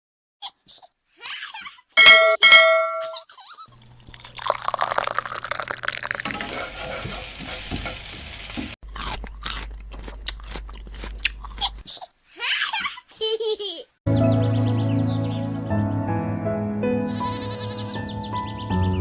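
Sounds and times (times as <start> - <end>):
short loud ringing tones: 2.0 - 3.2
food sizzling in a pan: 3.8 - 8.8.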